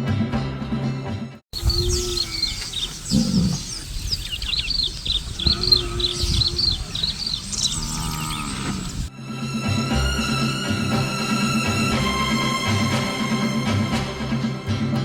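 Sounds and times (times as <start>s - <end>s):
birds chirping: 1.6s - 9.1s
short low bird call: 1.6s - 9.1s.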